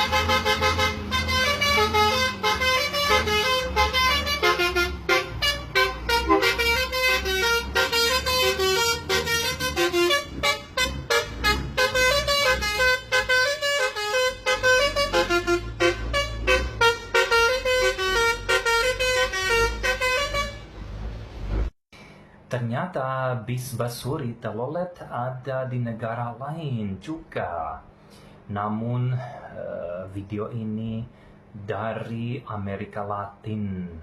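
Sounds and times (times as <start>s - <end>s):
bus engine rumble: 0.0s - 21.7s
musical air horn tune: 0.0s - 21.7s.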